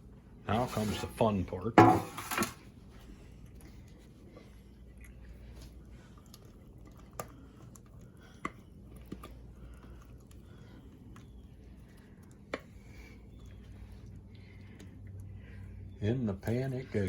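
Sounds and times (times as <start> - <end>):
batter scraped from a bowl: 0.5 - 2.6.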